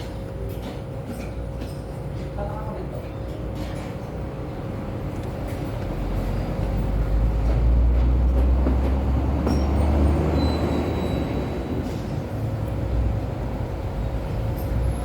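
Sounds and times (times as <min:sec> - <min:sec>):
diesel engine cranking: 0:06.7 - 0:15.0.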